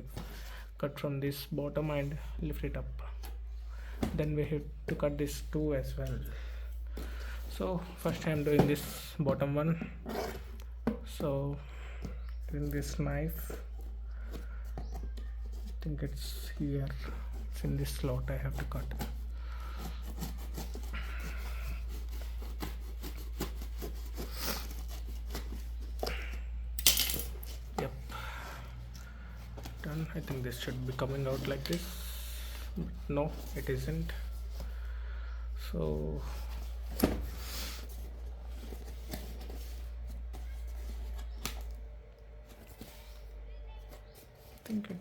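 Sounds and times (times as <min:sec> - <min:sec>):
cardboard scraping rasp: 0:12.2 - 0:26.3.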